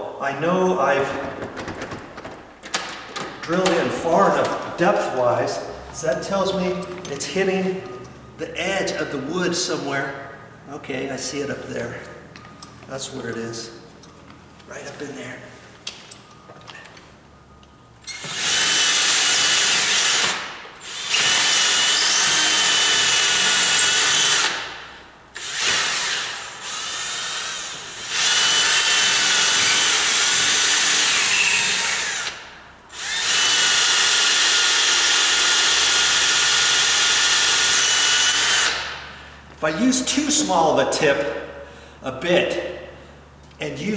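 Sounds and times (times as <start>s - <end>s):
electric drill grinding wood: 18.0s - 24.7s, 25.4s - 39.0s.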